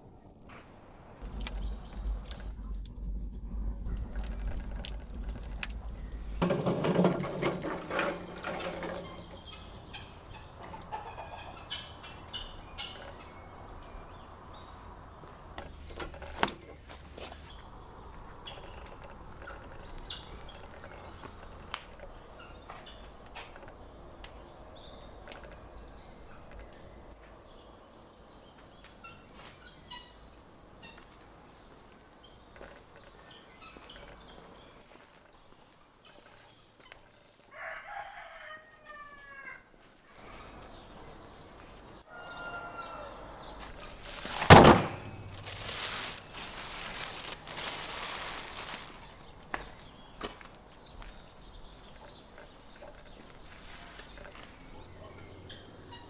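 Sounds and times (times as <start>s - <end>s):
poultry calling: 8.4s - 13.5s.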